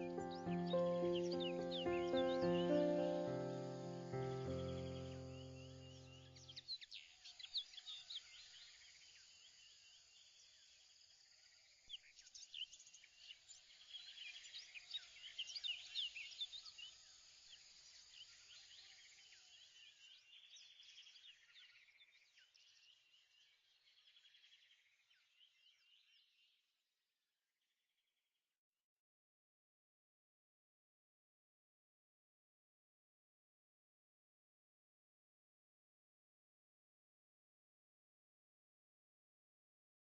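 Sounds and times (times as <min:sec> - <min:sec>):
birds chirping: 0:00.0 - 0:06.7.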